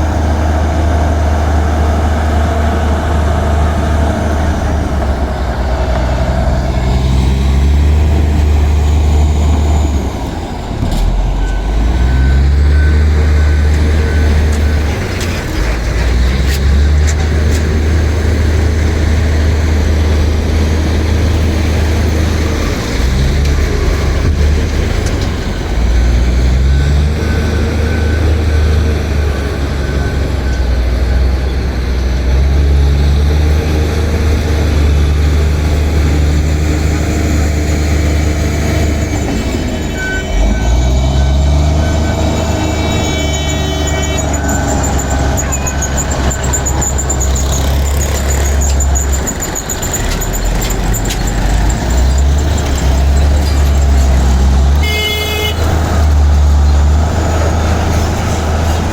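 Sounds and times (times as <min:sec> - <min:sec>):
bulldozer diesel engine revving: 0:00.0 - 0:58.9
high repeated beep: 0:39.9 - 0:47.6.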